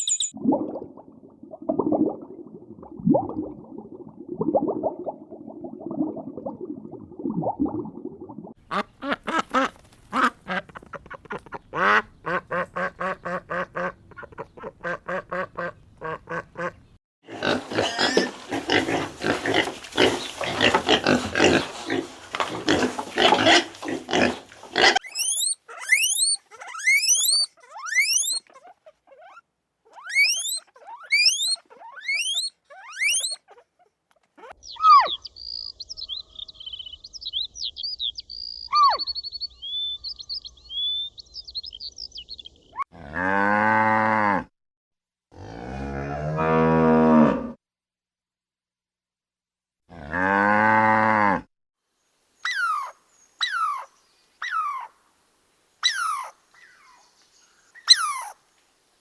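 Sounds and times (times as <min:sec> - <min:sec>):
rising bird chirps: 0:00.0 - 0:00.4, 0:25.1 - 0:28.4, 0:30.1 - 0:33.4, 0:34.6 - 0:42.8
animal calls: 0:17.4 - 0:35.2, 0:52.4 - 0:54.9, 0:55.8 - 0:57.1, 0:57.8 - 0:58.4.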